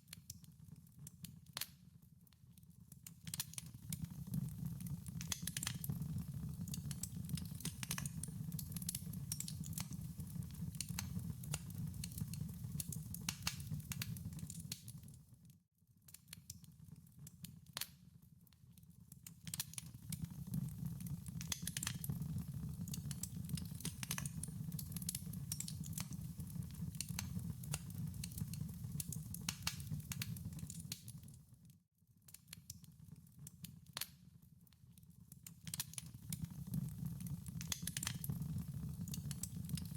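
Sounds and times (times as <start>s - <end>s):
wood fire crackling: 3.2s - 15.1s, 19.4s - 31.4s, 35.4s - 39.9s.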